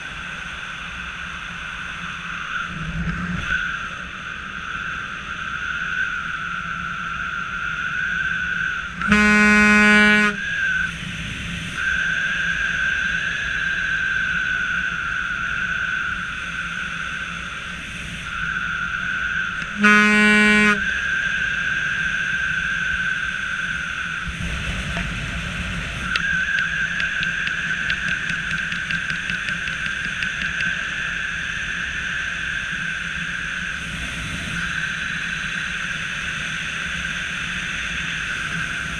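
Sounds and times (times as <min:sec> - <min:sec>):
vehicle high-pitched whine: 0:00.0 - 0:38.9
horn blasts: 0:09.0 - 0:10.8, 0:19.6 - 0:21.2.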